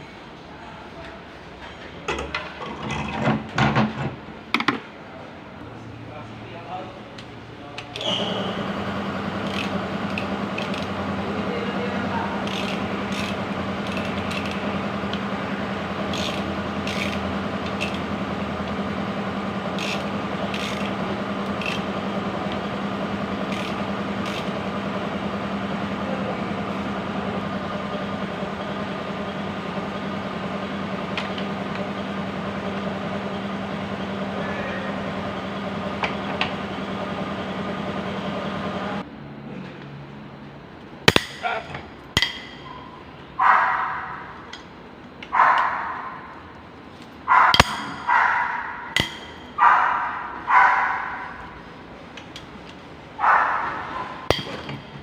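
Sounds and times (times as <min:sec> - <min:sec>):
mechanical hum: 0:00.0 - 0:55.0.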